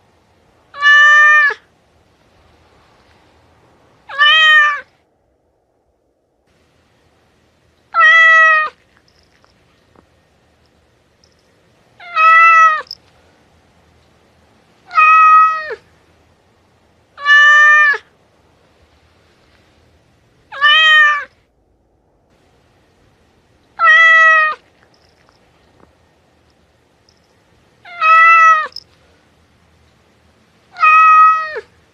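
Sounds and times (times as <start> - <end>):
cat meowing: 0.7 - 1.7, 4.1 - 4.9, 7.9 - 8.8, 12.0 - 13.0, 14.9 - 15.8, 17.2 - 18.1, 20.5 - 21.3, 23.8 - 24.7, 27.8 - 28.8, 30.7 - 31.7.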